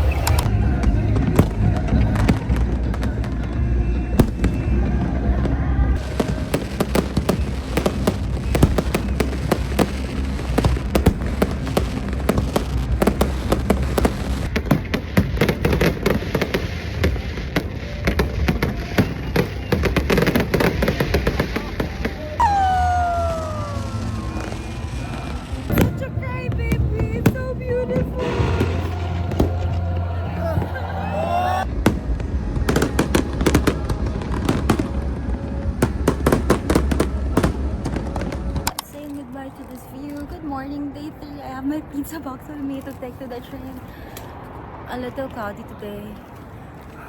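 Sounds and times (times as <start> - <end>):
steady low rumble: 0.0 - 14.6, 22.5 - 38.7
fireworks popping and crackling: 0.0 - 29.7, 31.6 - 40.3.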